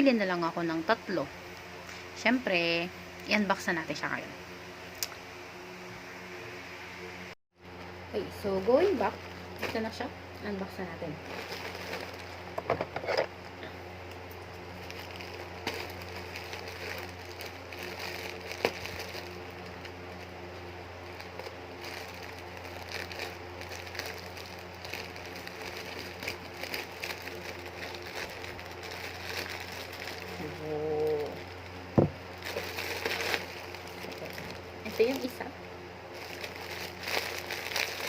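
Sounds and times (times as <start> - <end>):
steady low hum: 0.0 - 38.0
plastic packaging crinkling: 11.1 - 13.2, 14.5 - 35.5, 36.1 - 38.0.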